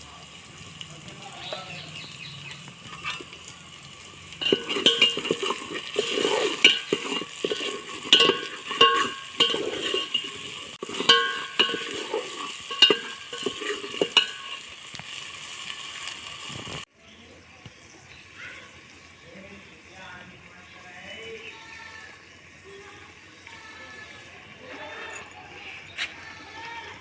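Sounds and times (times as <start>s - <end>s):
curry sizzling in a pan: 0.0s - 25.1s
spatula scraping a pan: 1.4s - 16.9s.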